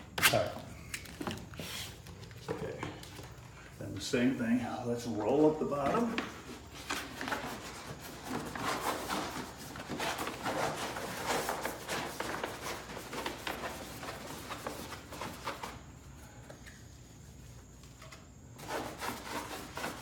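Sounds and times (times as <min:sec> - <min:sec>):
vinyl sheet rustling and crinkling: 0:05.0 - 0:16.0.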